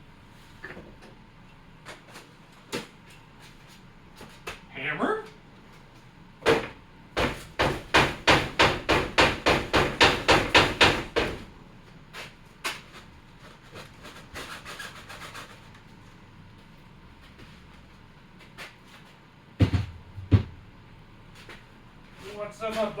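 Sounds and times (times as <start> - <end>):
hammer striking wooden box: 6.5 - 11.4.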